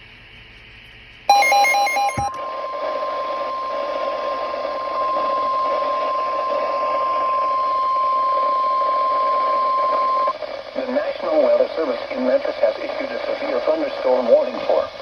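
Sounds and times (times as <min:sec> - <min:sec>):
steady single-pitch alarm tone: 0:01.3 - 0:10.4
radio static hiss: 0:02.5 - 0:15.0.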